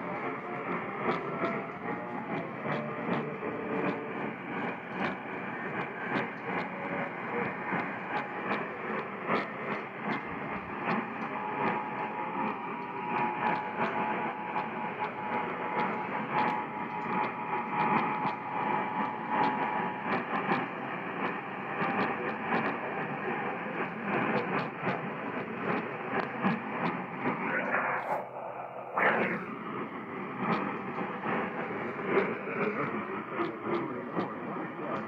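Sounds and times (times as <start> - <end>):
radio static hiss and crackles: 27.2 - 32.3.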